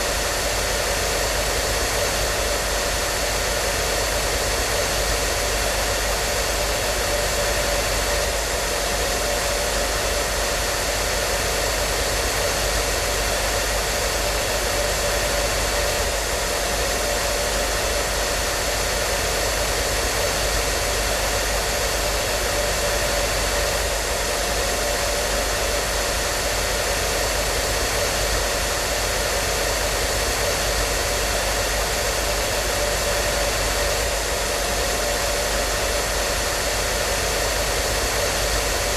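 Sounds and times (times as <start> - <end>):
hair dryer running: 0.0 - 38.9.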